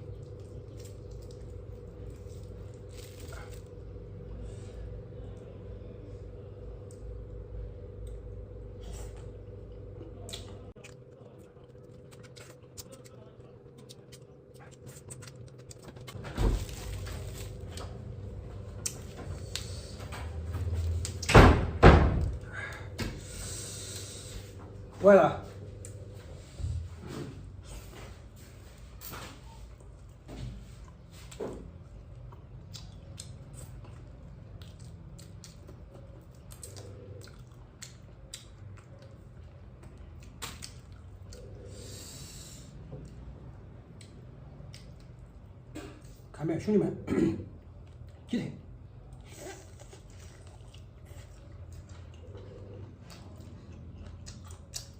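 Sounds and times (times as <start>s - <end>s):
clicks and crackles of eating: 0.0s - 3.8s, 7.9s - 18.0s, 18.7s - 21.4s, 29.0s - 41.7s, 43.0s - 46.3s, 47.6s - 48.3s, 49.0s - 54.9s
low hum: 0.0s - 46.3s.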